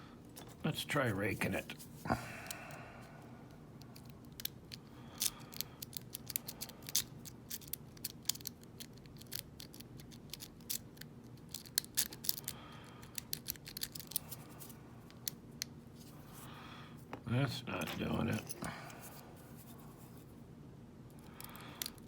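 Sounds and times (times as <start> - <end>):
lock pick scraping lock pins: 3.8 - 14.4, 17.7 - 19.2.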